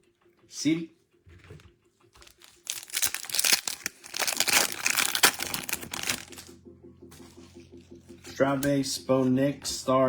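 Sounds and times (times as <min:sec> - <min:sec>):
foil wrapper tearing and crinkling: 0:02.2 - 0:06.5.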